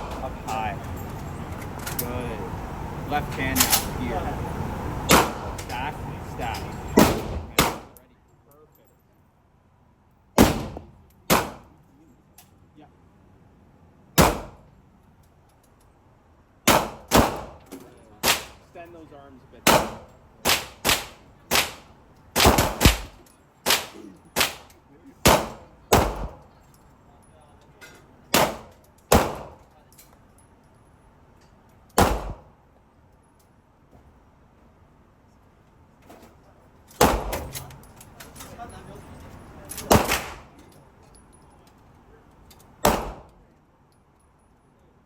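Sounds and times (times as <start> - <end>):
indoor gunshots: 5.1 - 5.6, 7.0 - 8.0, 10.4 - 11.8, 14.2 - 14.7, 16.6 - 18.6, 19.6 - 26.5, 28.3 - 29.6, 32.0 - 32.5, 37.0 - 37.6, 39.8 - 40.6, 42.8 - 43.4
handgun shots: 5.1 - 5.7, 7.0 - 8.0, 10.4 - 11.7, 14.2 - 14.6, 16.7 - 18.6, 19.7 - 26.5, 28.3 - 29.6, 32.0 - 32.5, 37.0 - 37.6, 39.8 - 40.6, 42.8 - 43.4.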